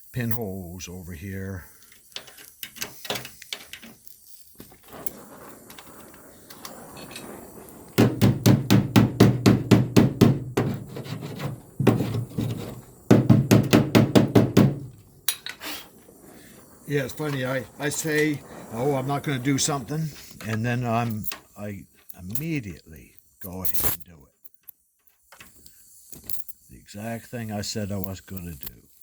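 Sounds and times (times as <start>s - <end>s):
welding crackling: 0.0s - 29.0s
faint rubbing: 1.1s - 13.3s, 14.1s - 24.3s.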